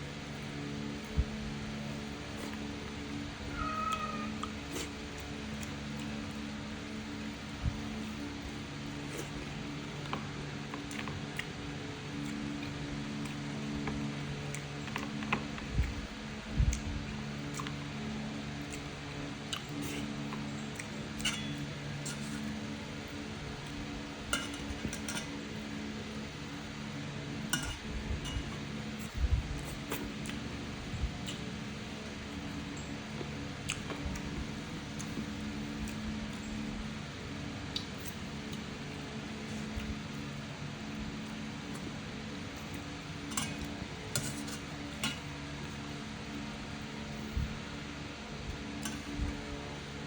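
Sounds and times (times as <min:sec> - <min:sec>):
low hum: 0:00.0 - 0:50.0
utensil clinking against dish: 0:21.2 - 0:22.4, 0:24.3 - 0:25.4, 0:27.5 - 0:28.7
cutlery clinking on dishes: 0:27.5 - 0:28.6.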